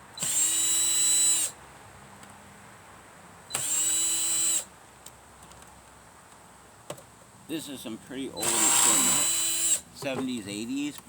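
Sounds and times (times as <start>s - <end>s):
power drill whine: 0.2s - 1.6s, 3.5s - 4.7s, 8.4s - 9.8s.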